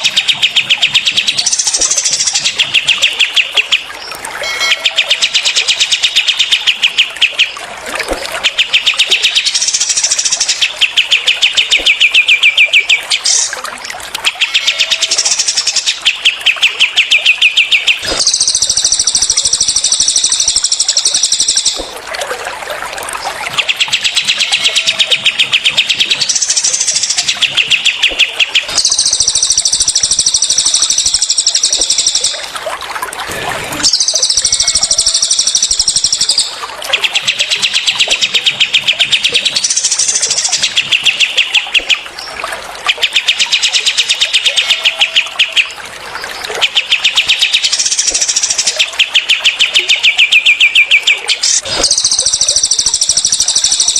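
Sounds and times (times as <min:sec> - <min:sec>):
songbirds singing rapid runs: 0:00.0 - 0:04.2, 0:23.2 - 0:32.4
water trickling: 0:00.0 - 0:53.9.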